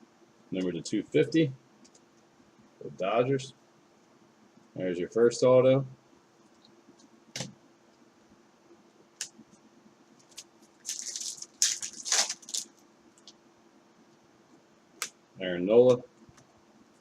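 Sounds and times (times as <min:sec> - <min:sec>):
packaging rustling and crinkling: 0:10.2 - 0:13.3.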